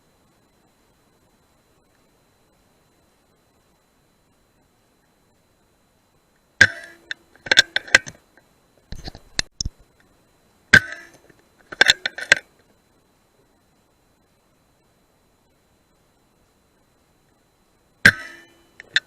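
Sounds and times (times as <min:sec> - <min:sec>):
metallic clicks: 0:06.6 - 0:08.2, 0:10.8 - 0:12.5, 0:18.0 - 0:19.0.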